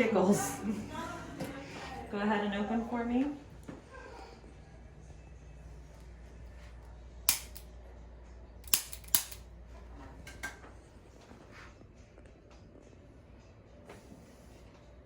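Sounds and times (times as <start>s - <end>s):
spring-loaded instrument clicks: 7.3s - 7.6s, 8.6s - 9.4s.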